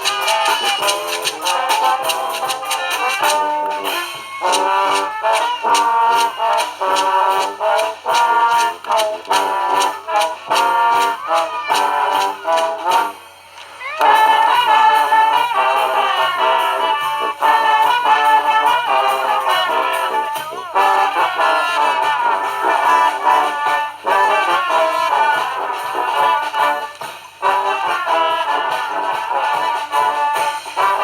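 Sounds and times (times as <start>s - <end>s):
sharp percussion hits: 0.0s - 21.4s
brass band playing: 0.0s - 31.0s.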